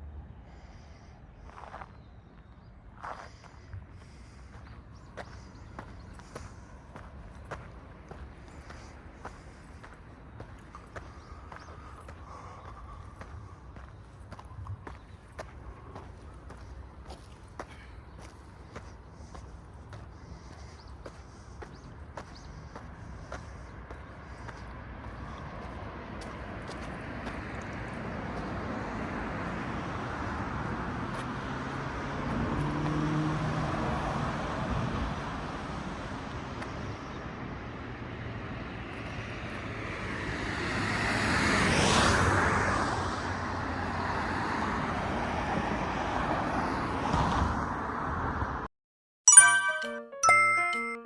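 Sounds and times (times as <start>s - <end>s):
outdoor background rush: 0.0s - 48.7s
vehicle passing by: 3.0s - 48.7s
chiming music: 49.3s - 51.0s.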